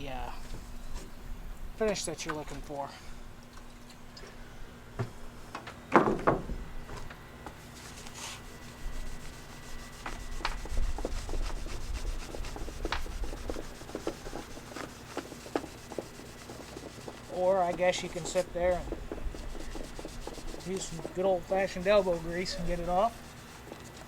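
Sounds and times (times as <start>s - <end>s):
cloth rubbing on wood: 7.5s - 24.0s.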